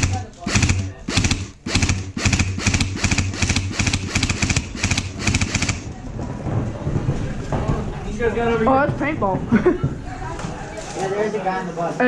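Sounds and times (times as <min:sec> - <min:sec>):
airsoft gun firing bursts: 0:00.0 - 0:05.9.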